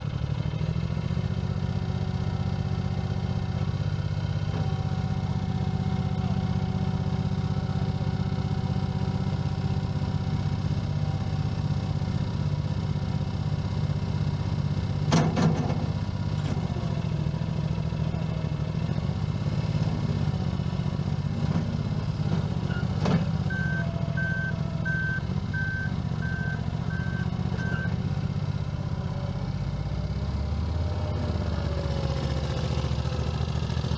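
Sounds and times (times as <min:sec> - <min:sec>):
loader engine running: 0:00.0 - 0:33.9
backup alarm beeping: 0:23.5 - 0:27.9.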